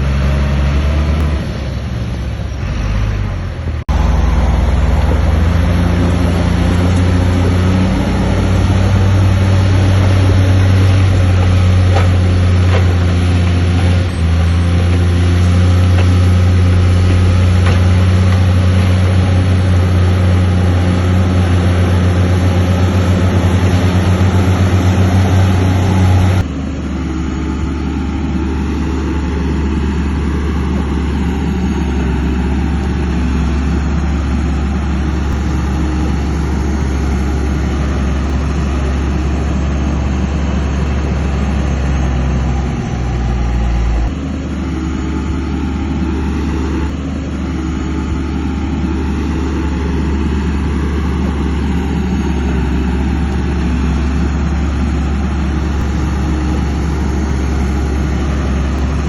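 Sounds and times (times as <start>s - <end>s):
heavy diesel engine droning: 0.0s - 59.0s.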